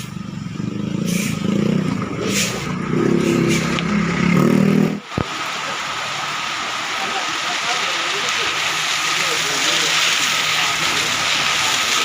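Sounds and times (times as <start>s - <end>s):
vehicle engines passing: 0.0s - 12.0s
steady hiss: 5.1s - 12.0s.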